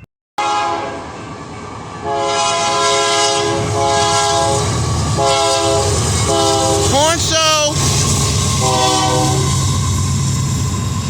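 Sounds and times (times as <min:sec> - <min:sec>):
locomotive air horn blasts: 0:00.4 - 0:01.1, 0:02.0 - 0:07.3, 0:08.4 - 0:09.8
passing train rumble: 0:00.4 - 0:11.0.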